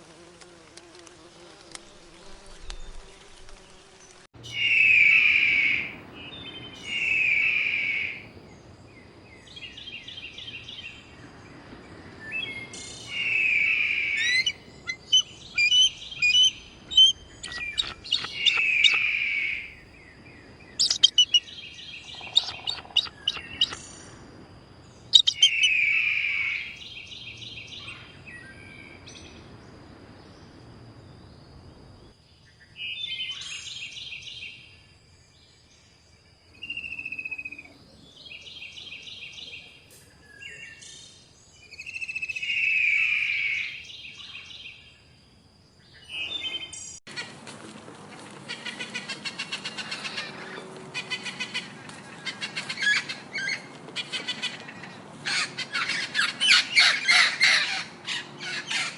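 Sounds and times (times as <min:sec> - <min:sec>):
songbird trilling: 0:04.4 - 0:08.4, 0:12.3 - 0:24.2, 0:25.1 - 0:28.6, 0:41.6 - 0:44.8
fast bird chirps: 0:04.5 - 0:08.3, 0:12.6 - 0:24.1, 0:25.1 - 0:27.0.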